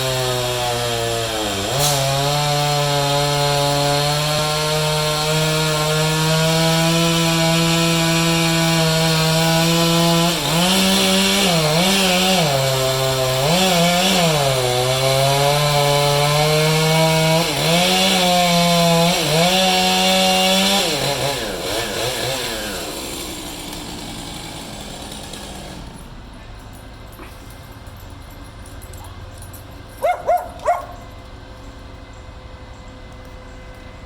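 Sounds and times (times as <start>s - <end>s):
chainsaw running at high revs: 0.0s - 26.2s.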